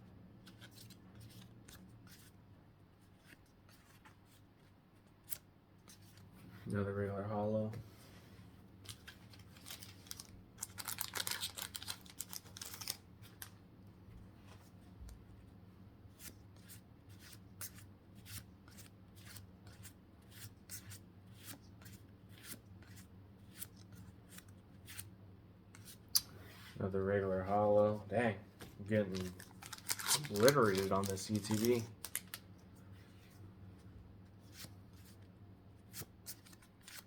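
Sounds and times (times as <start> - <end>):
trading cards rustling: 8.8 - 13.6, 28.6 - 32.6.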